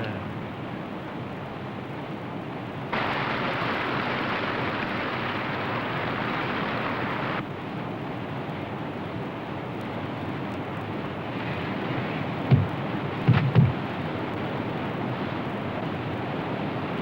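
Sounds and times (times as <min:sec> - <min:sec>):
whitewater rushing: 0:02.9 - 0:07.4.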